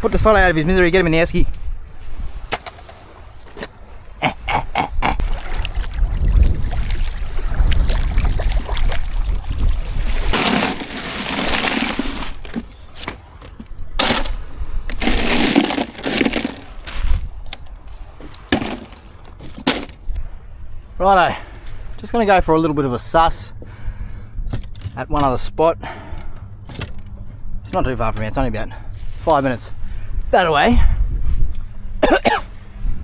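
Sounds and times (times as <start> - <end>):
wind rumble on microphone: 0.0 - 10.7, 16.7 - 18.4, 20.0 - 33.0
sloshing water: 5.2 - 20.4
sharp knocks and cracks: 10.3 - 20.2.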